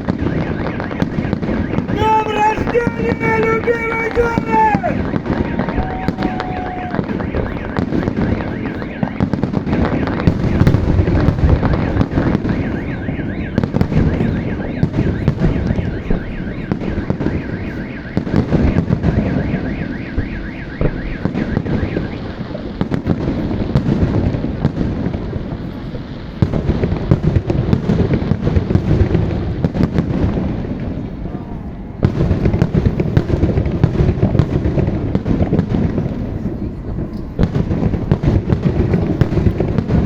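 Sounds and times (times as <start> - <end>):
warbling car alarm: 0.0 - 22.8
fireworks bangs and crackling: 0.0 - 40.0.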